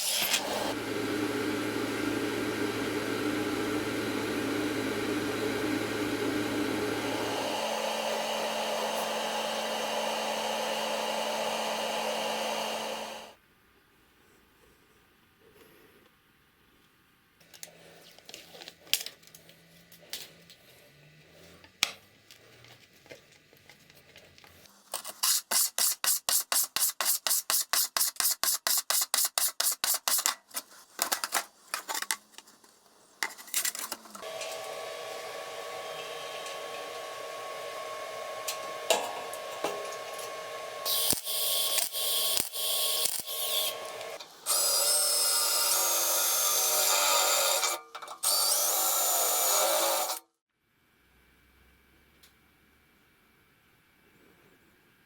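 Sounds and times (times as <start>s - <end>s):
loud power tool: 0.0s - 13.4s, 34.2s - 50.3s
small electric machine humming: 0.2s - 13.4s, 34.2s - 50.3s.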